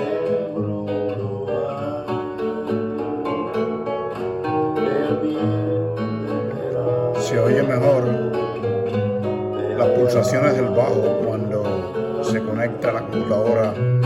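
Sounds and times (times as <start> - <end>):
guitar playing chords: 0.0 - 14.0.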